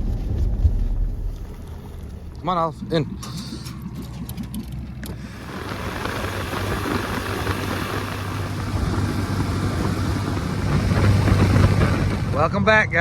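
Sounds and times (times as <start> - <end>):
boat engine running: 0.0 - 13.0
rush of wind and water: 4.4 - 13.0.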